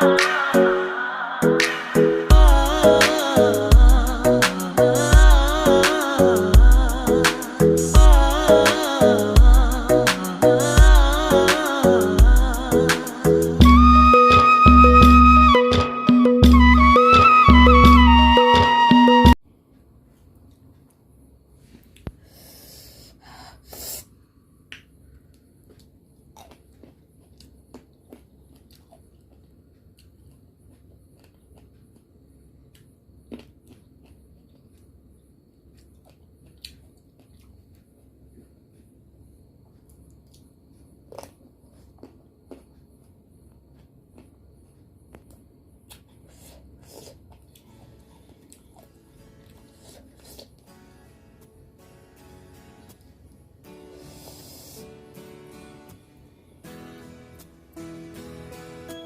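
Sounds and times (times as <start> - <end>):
breathy sniff: 22.2 - 24.3, 46.2 - 47.3, 49.6 - 50.6, 53.8 - 55.0
wet chewing clicks and smacks: 25.7 - 35.0, 35.7 - 38.1.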